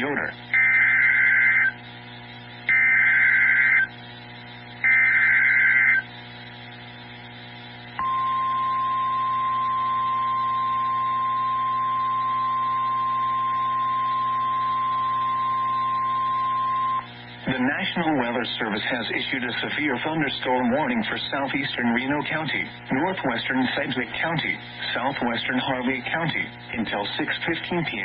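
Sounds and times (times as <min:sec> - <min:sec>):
steady warning alarm tone: 0:00.5 - 0:01.8, 0:02.7 - 0:03.9, 0:04.8 - 0:06.1, 0:08.0 - 0:17.1
digital data bursts: 0:02.7 - 0:03.9, 0:04.8 - 0:06.1.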